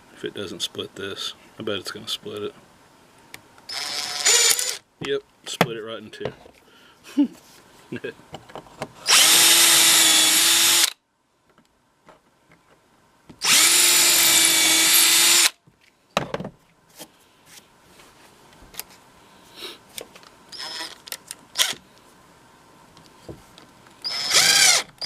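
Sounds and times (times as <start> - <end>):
power drill driving screws: 3.7 - 4.8, 9.0 - 11.0, 13.4 - 15.6, 20.5 - 21.8, 24.0 - 25.0.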